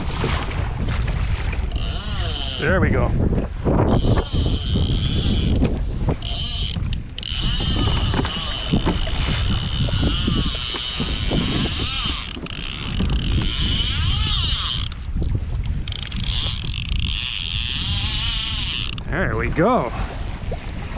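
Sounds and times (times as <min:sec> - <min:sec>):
wind buffeting microphone: 0:00.0 - 0:20.9
fishing reel whirring: 0:01.6 - 0:03.0, 0:03.8 - 0:19.1.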